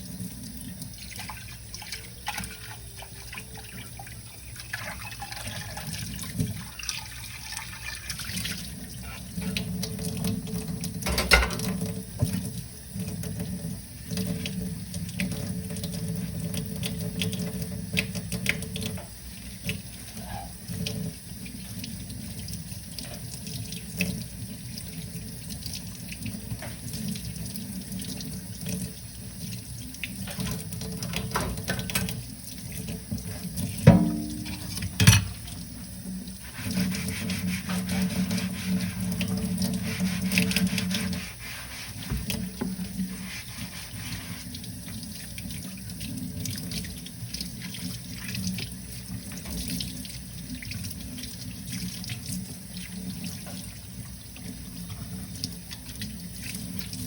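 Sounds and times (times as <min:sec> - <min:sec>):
tap water running into sink: 0:00.0 - 0:57.0
dishes clinking and knocking: 0:11.0 - 0:11.9, 0:33.9 - 0:35.6.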